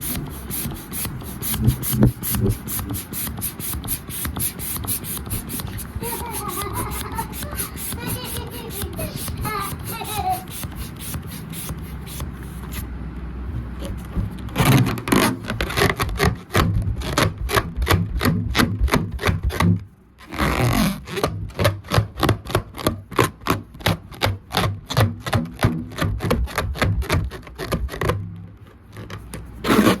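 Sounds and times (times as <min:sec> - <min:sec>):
balloon rubbing squeaks: 0:00.0 - 0:12.9, 0:13.7 - 0:30.0.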